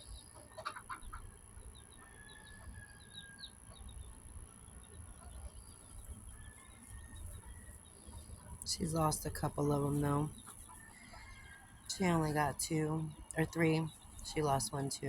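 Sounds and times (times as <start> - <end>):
chicks peeping: 0.1 - 14.6
hen clucking: 0.4 - 1.3.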